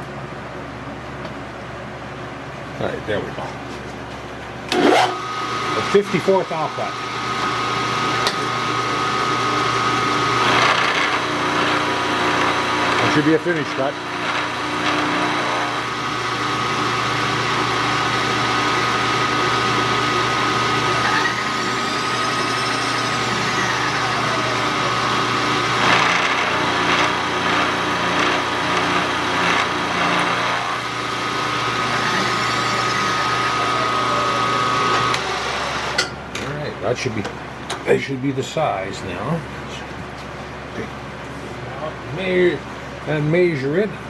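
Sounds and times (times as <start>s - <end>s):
milling machine cutting with whine: 4.7s - 36.1s.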